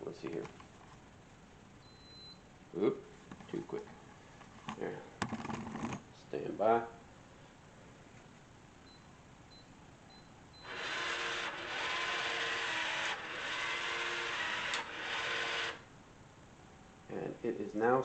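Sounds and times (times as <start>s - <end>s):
faint short beeps: 1.8s - 2.4s
lock motor running: 10.6s - 15.9s.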